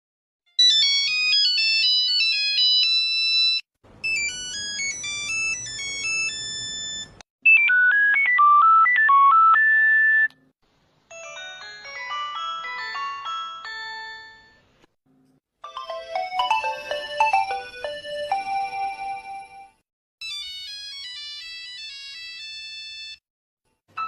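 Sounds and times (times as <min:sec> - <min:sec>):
electronic phone ringtones: 0:00.6 - 0:10.3, 0:15.7 - 0:23.2.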